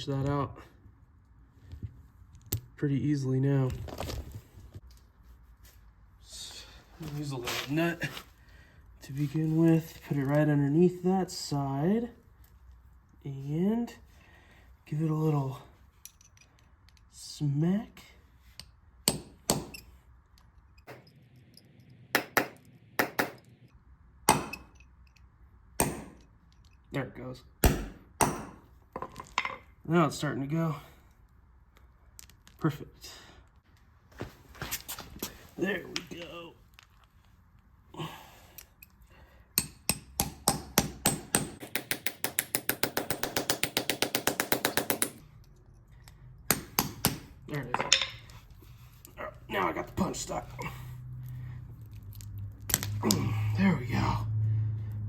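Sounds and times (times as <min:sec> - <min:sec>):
hammer striking metal punch: 0:19.1 - 0:19.9, 0:22.2 - 0:23.5, 0:24.3 - 0:24.8, 0:25.8 - 0:26.3, 0:27.6 - 0:28.6, 0:39.6 - 0:45.2, 0:46.5 - 0:48.1.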